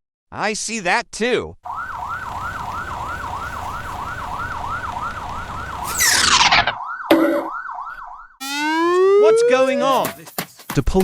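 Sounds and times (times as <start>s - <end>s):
cartoon police siren yelping: 1.7s - 10.3s.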